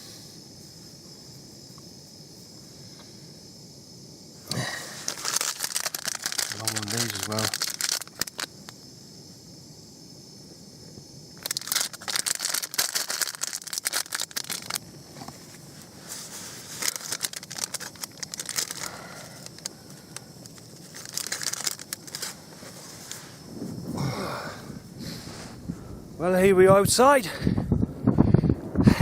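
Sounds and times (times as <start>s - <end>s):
tent fabric rustling and crinkling: 4.9s - 8.5s, 11.4s - 19.7s, 20.5s - 23.9s.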